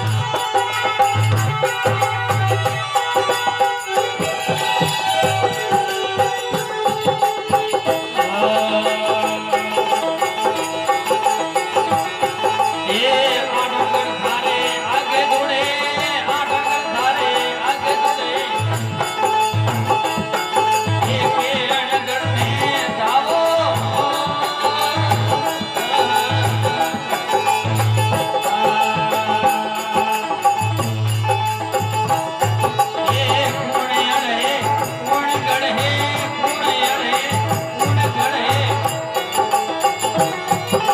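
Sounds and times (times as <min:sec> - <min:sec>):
rhythmic jingling percussion: 0:00.0 - 0:40.9.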